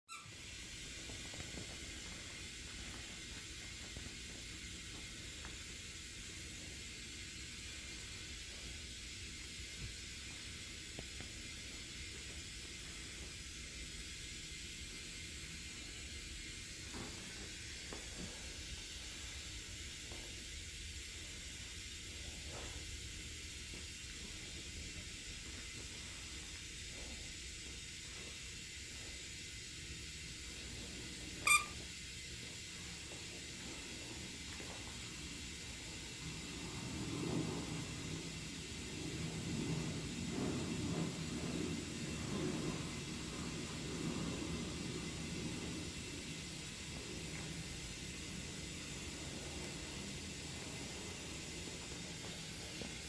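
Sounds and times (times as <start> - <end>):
steady hiss: 0.1 - 53.0.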